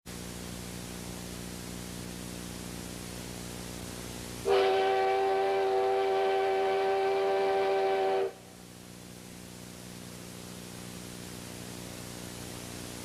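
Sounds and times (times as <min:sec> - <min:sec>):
steady hiss: 0:00.1 - 0:13.0
steam locomotive whistle: 0:04.4 - 0:08.5.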